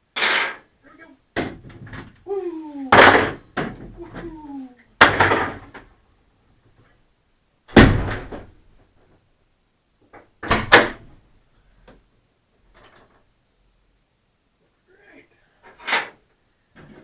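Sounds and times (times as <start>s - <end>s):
wooden door slamming: 2.9s - 4.3s, 7.7s - 8.6s, 10.4s - 11.1s.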